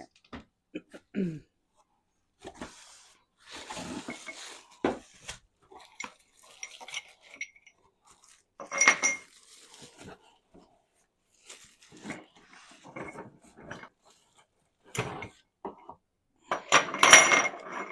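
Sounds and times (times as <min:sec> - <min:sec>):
packaging rustling: 0:09.2 - 0:10.2.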